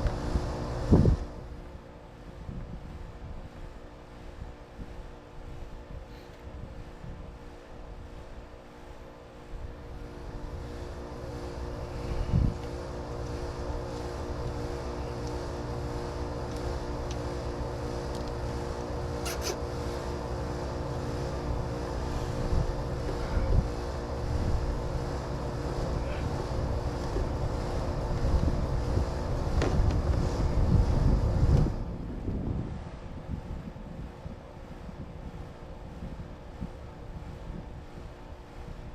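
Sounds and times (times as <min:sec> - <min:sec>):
wind rumble on microphone: 0:00.0 - 0:19.2, 0:19.9 - 0:38.9
sharp click: 0:19.3 - 0:19.6.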